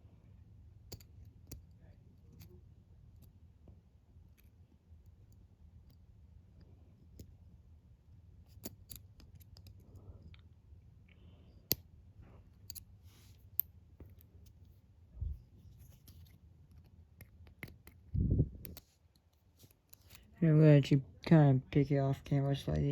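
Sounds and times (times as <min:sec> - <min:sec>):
lock pick clicking and scraping: 0:00.9 - 0:02.5, 0:08.5 - 0:10.4, 0:11.5 - 0:14.7, 0:15.7 - 0:20.3.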